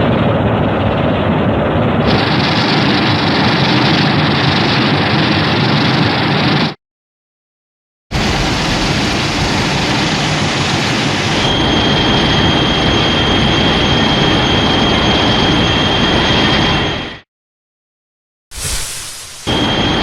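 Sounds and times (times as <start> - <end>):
high steady whine: 8.2 - 17.2, 18.6 - 20.0
rushing hissing blast: 18.5 - 20.0.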